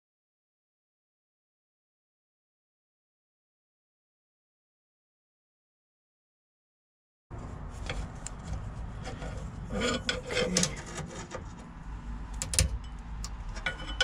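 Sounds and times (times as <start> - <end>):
parts and hoses clicking and knocking: 7.4 - 14.0.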